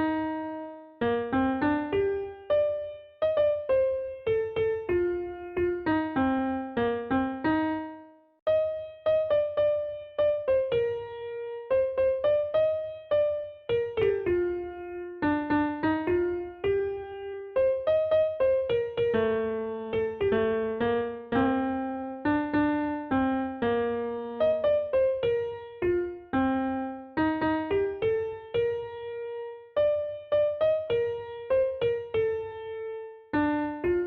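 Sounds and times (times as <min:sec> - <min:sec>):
piano-like keyboard melody: 0:00.0 - 0:34.0.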